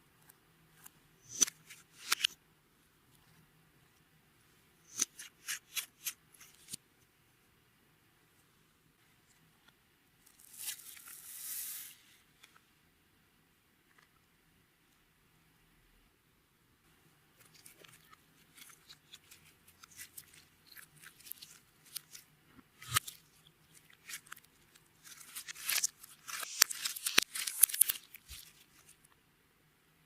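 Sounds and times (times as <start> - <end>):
slime crackling and popping: 25.0 - 28.6.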